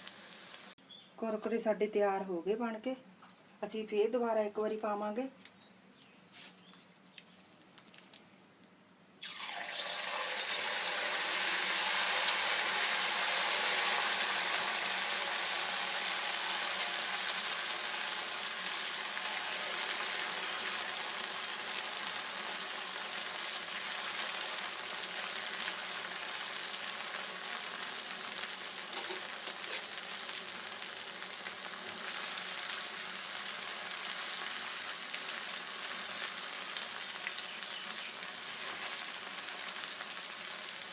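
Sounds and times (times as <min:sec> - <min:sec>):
deep frying sizzle: 0:00.0 - 0:00.8, 0:09.2 - 0:40.9.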